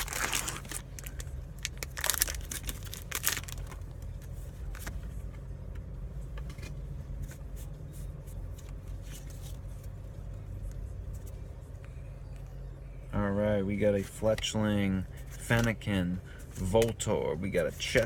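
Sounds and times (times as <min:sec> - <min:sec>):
foil pack crinkling and tearing: 0:00.0 - 0:03.8
low hum: 0:00.0 - 0:16.9
cards being handled: 0:15.2 - 0:15.9, 0:16.5 - 0:17.1.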